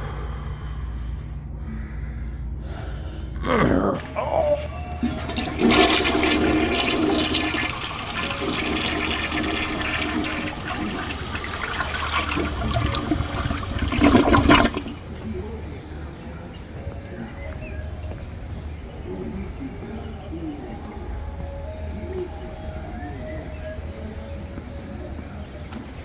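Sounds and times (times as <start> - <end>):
water rushing loudly: 5.0 - 15.0.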